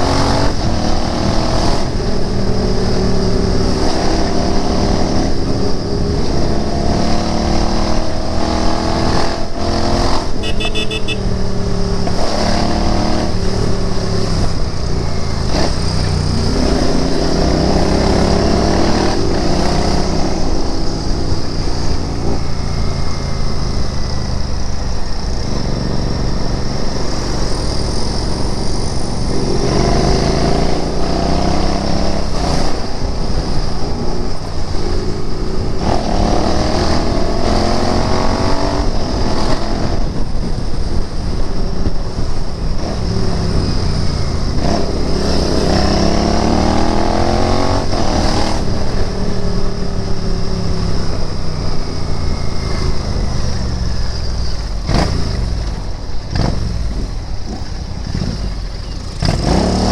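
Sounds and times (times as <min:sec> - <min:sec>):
motorcycle engine accelerating: 0:00.0 - 0:59.9
high beeps: 0:10.4 - 0:11.3.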